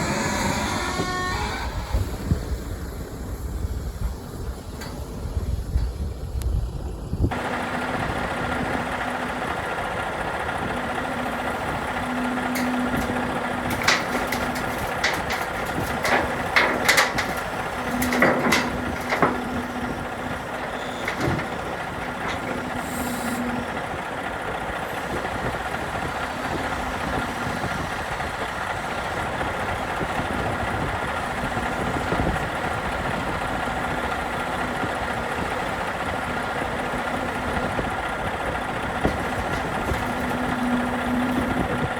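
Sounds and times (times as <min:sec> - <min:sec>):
diesel truck engine running: 0:01.8 - 0:41.9
knocks and rattles: 0:10.8 - 0:23.8, 0:39.0 - 0:41.8.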